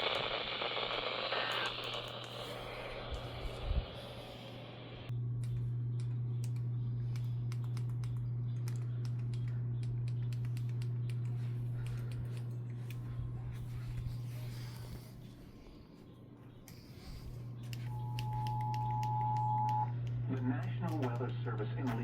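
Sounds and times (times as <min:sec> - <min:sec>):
steady low hum: 0:00.0 - 0:22.0
computer keyboard typing: 0:05.4 - 0:12.6, 0:18.0 - 0:21.4.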